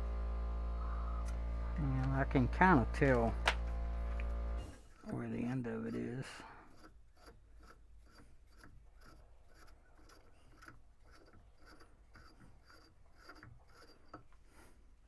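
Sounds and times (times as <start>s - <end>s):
tool scraping inside plastic knob: 5.0s - 14.9s.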